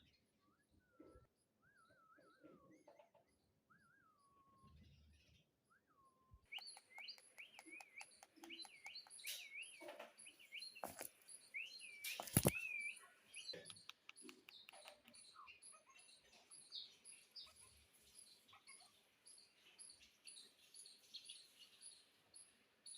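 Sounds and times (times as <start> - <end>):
parrot chirping and whistling: 5.8 - 9.8
scattered clicks: 6.5 - 11.2, 11.9 - 15.4.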